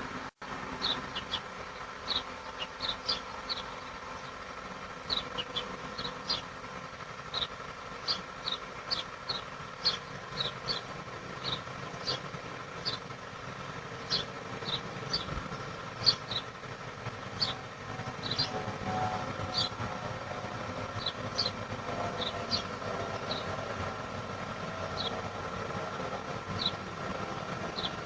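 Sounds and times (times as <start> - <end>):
steady low rumble: 0.0 - 28.0.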